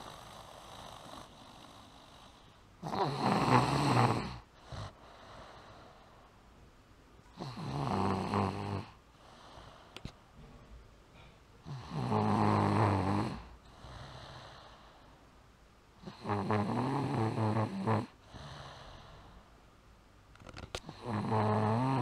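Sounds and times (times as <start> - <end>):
toddler snoring: 0.0 - 6.2, 7.3 - 10.0, 11.6 - 15.1, 16.0 - 19.4, 20.8 - 22.0
quiet breathing: 0.0 - 6.6, 7.2 - 22.0.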